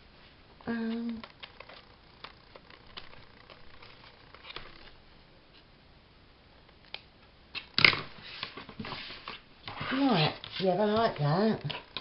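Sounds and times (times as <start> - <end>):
paper and card ticking: 0.7 - 5.0
paper rustling: 1.2 - 5.0.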